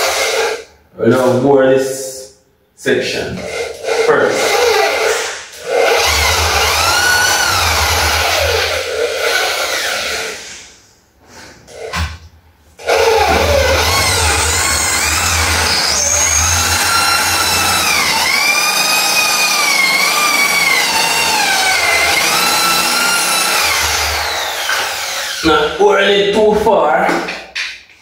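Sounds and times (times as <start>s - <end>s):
power drill boring into door: 3.4s - 10.6s, 12.8s - 25.6s.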